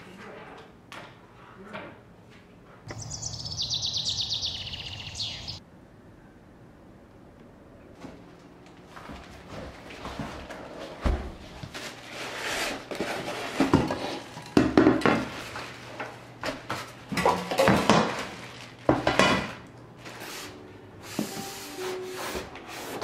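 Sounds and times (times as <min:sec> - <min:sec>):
dishes clattering and knocking: 0:17.1 - 0:19.6.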